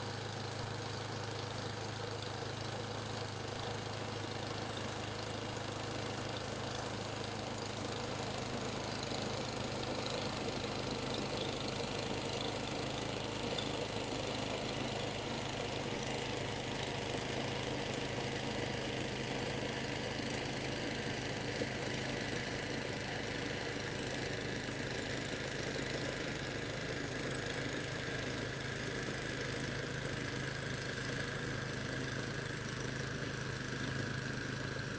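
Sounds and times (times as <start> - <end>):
snow-clearing machine engine: 0.0 - 34.9.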